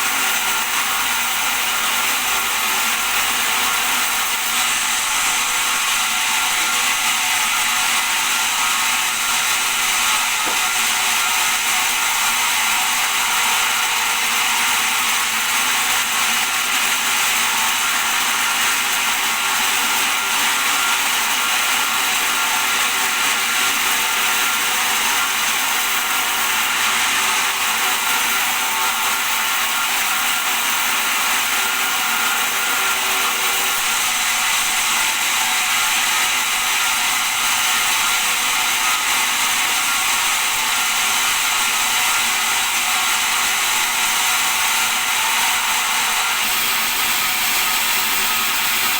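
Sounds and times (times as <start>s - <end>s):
bandsaw running: 0.0s - 48.9s.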